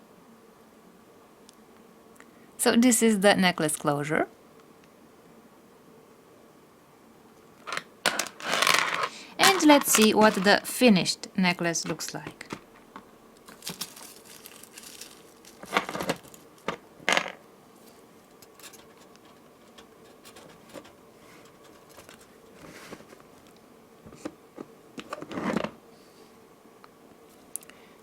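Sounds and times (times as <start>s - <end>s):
beaded necklace clicking and rattling: 8.1s - 10.6s, 13.5s - 16.4s.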